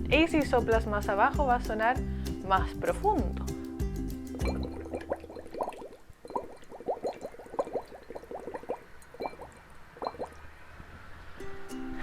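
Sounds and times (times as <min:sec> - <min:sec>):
bubbles blown through straw: 0:04.4 - 0:10.4.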